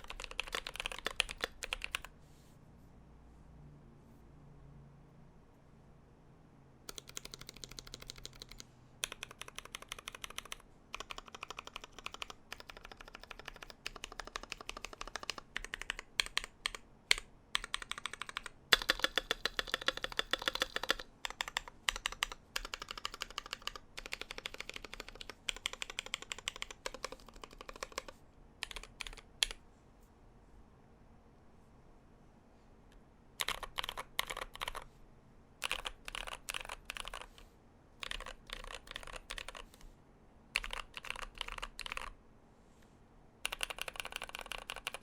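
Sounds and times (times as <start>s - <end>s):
mechanical keyboard typing: 0.0s - 2.1s, 6.9s - 29.6s, 33.4s - 34.9s, 35.6s - 37.4s, 38.0s - 39.8s, 40.5s - 42.2s, 43.4s - 45.0s.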